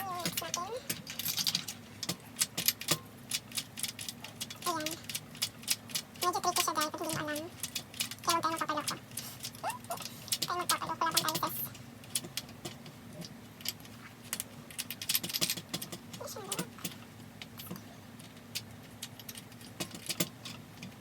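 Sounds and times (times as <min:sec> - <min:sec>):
plastic and metal parts rattling: 0:00.0 - 0:21.0
clicks and taps: 0:14.3 - 0:21.0.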